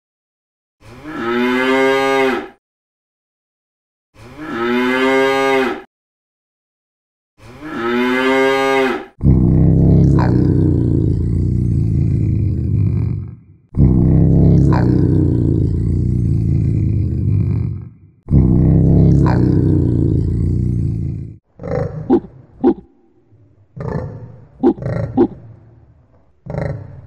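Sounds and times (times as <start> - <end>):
cow mooing: 1.0 - 2.6, 4.3 - 5.9, 7.6 - 12.7.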